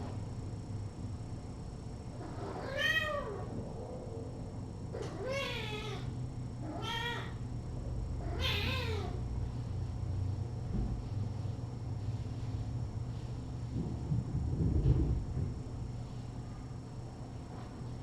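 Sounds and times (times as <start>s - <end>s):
steady low hum: 0.0s - 18.0s
cat meowing: 2.2s - 3.6s, 4.9s - 7.4s, 8.2s - 9.2s.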